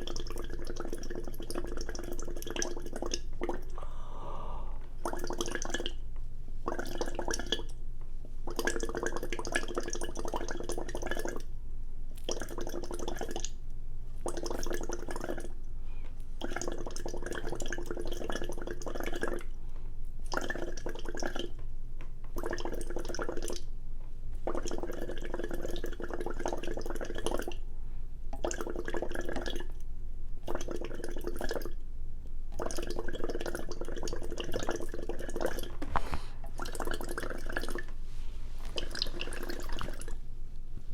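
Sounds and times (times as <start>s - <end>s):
steady low hum: 2.7s - 9.0s, 34.4s - 40.9s
wet slurping mouth sounds: 32.6s - 38.0s, 38.6s - 40.2s.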